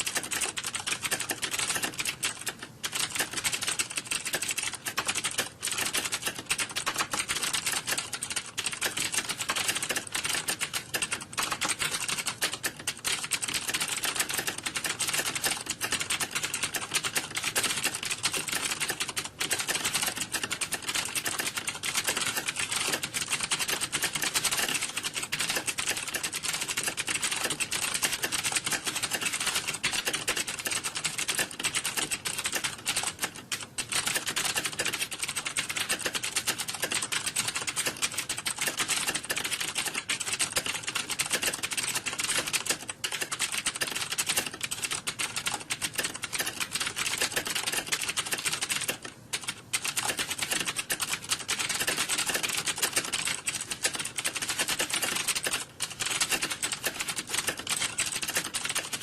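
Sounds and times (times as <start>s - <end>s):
keyboard typing: 0.0s - 59.0s.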